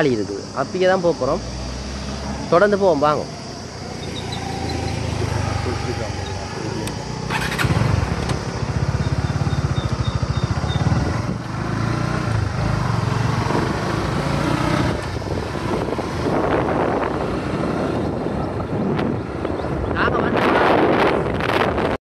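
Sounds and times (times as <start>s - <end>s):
motorcycle engine pulling away: 1.7s - 18.6s
wind rush while riding: 3.5s - 22.0s.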